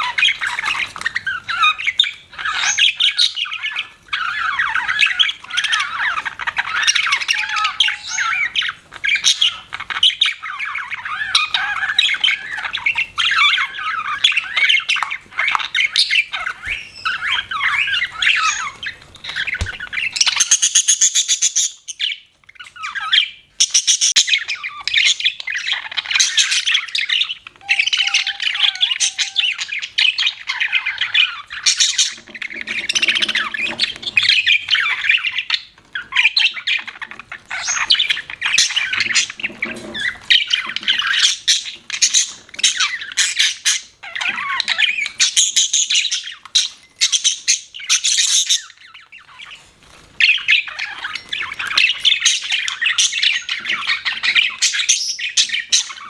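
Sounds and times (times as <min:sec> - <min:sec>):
budgerigars chattering and chirping: 0:00.0 - 0:56.0
high squawks: 0:27.5 - 0:35.1.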